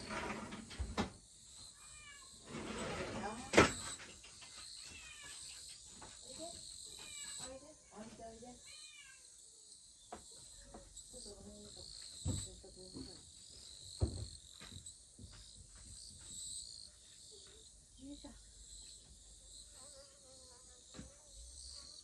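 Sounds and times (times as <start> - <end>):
knocks and thumps: 0.0 - 1.2, 12.1 - 16.4
insects chirping: 0.0 - 22.0.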